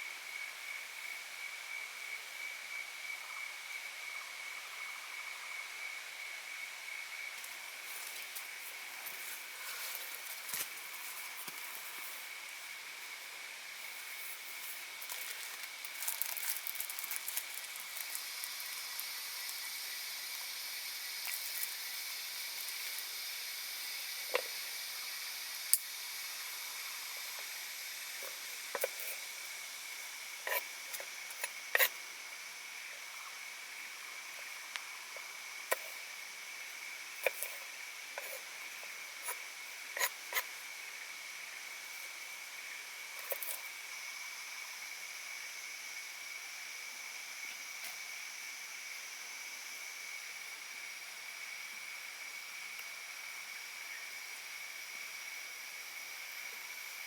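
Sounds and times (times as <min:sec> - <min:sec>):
faint hiss: 0:00.0 - 0:57.0
shrill insect chorus: 0:00.0 - 0:57.0
sharp ticks and pops: 0:25.6 - 0:26.0.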